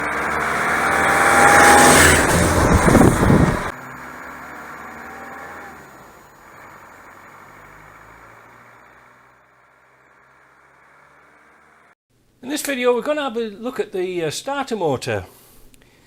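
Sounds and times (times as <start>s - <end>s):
vehicle engine running loudly: 0.0s - 11.9s.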